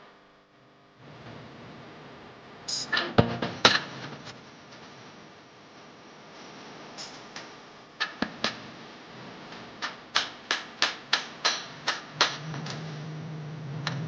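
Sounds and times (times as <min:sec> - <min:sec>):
low steady hum: 0:00.0 - 0:14.0.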